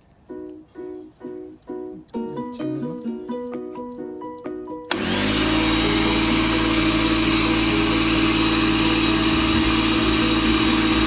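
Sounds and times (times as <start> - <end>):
air compressor running: 4.9 - 11.0
compressor hiss: 4.9 - 11.0.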